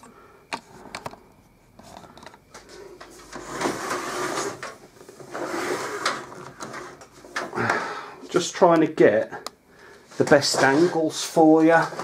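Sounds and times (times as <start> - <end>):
objects scraping and rustling: 0.6 - 7.6, 10.1 - 12.0.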